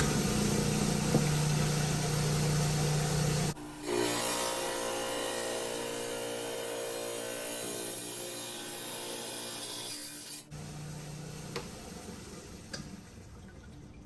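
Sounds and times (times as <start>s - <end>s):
saw motor hum and cutting: 0.0s - 10.5s.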